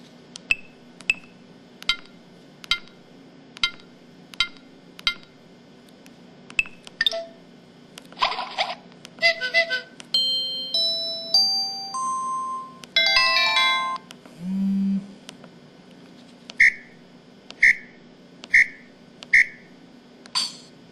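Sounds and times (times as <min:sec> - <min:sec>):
chord jingle: 0:10.2 - 0:14.0
low phone buzz: 0:14.3 - 0:15.2.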